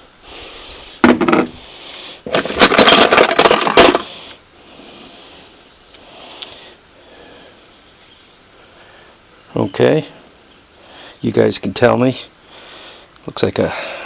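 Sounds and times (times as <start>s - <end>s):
metal tools clattering in toolbox: 2.3s - 4.1s.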